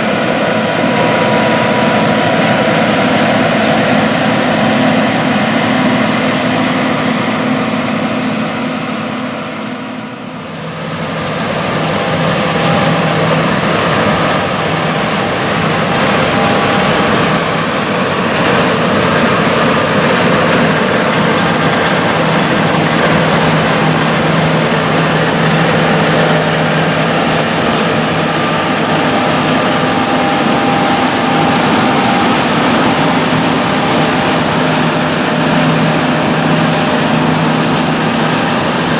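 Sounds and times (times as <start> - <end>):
combine engine hum: 0.0 - 38.9
threshing machinery noise: 0.0 - 38.9.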